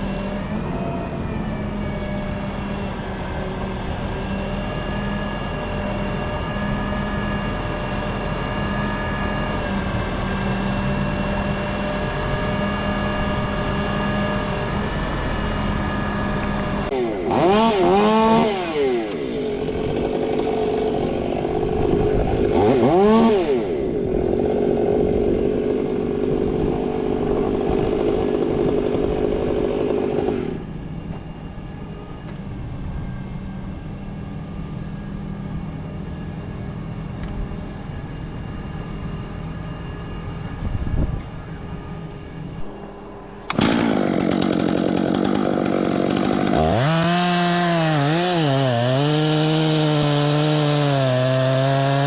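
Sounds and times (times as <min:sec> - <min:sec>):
electric chainsaw revving: 0:04.1 - 0:30.7, 0:42.6 - 0:52.0.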